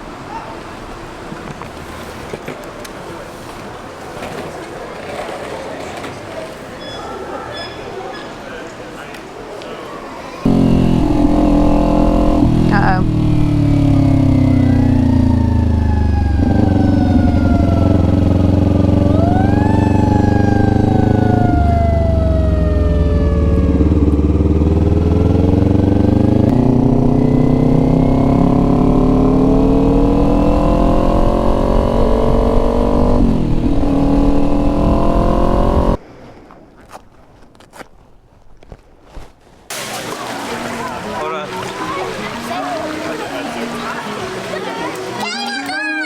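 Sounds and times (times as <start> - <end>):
motorcycle engine revving: 10.4 - 36.0.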